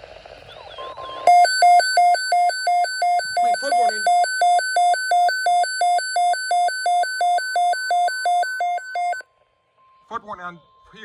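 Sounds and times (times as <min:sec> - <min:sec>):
alternating electronic alarm tones: 0:01.3 - 0:09.2.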